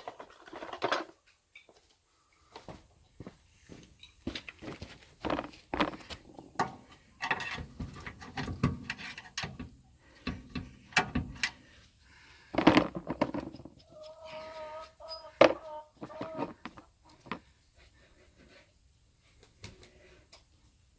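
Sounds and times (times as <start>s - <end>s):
tools knocking and scraping: 4.0s - 11.6s, 12.6s - 14.2s, 15.1s - 17.5s.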